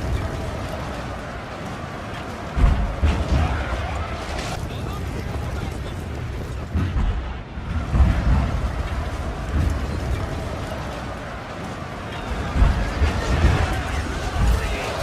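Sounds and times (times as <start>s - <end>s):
heavy booms: 2.5s - 10.6s.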